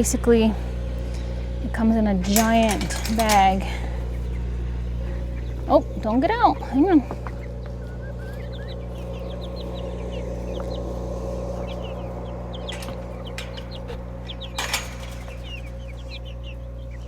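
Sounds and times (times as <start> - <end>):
steady low hum: 0.0 - 17.0
chicks peeping: 0.7 - 17.0
rustle or clatter: 2.2 - 3.9, 11.6 - 16.6.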